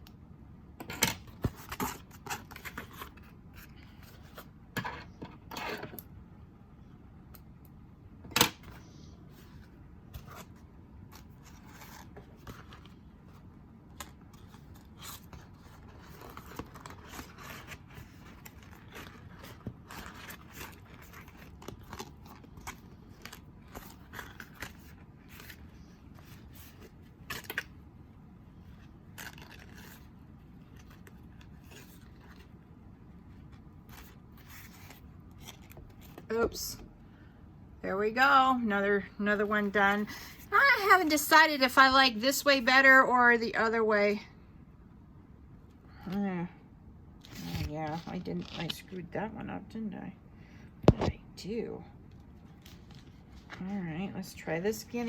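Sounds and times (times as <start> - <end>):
hands handling envelopes: 8.6 - 27.8.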